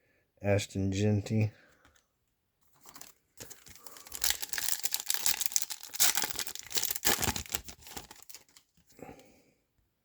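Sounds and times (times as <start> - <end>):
card pack wrapper tearing and crinkling: 2.8 - 8.8.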